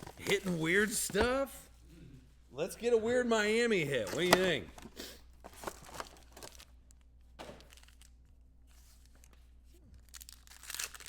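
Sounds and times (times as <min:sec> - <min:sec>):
card pack wrappers crinkling and tearing: 0:05.5 - 0:07.0, 0:07.6 - 0:08.2, 0:08.8 - 0:11.0.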